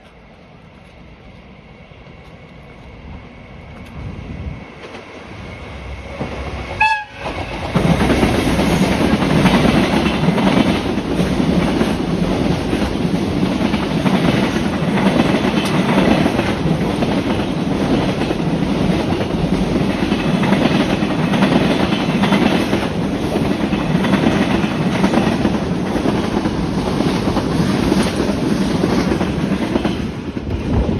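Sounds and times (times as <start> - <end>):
freight train passing: 0.0 - 30.9
train horn: 6.8 - 7.6.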